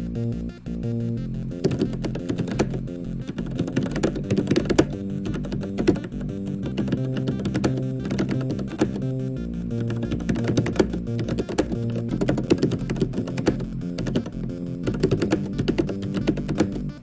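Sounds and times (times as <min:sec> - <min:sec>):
background music: 0:00.0 - 0:17.0
fast mechanical keyboard typing: 0:01.5 - 0:17.0.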